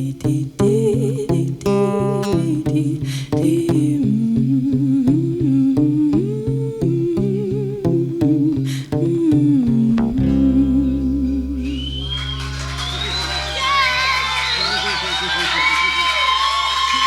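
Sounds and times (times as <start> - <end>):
person humming a melody: 0.0 - 12.0
plucked guitar: 0.0 - 15.6.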